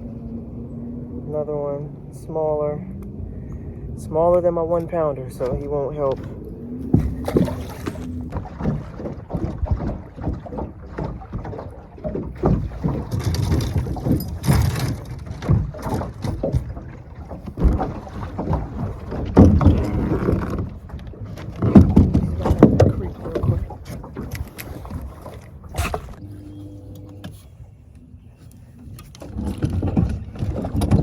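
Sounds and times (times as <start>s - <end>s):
wind buffeting microphone: 0.0s - 26.3s, 28.6s - 31.0s
low knocks and thumps: 4.7s - 26.2s, 28.8s - 31.0s.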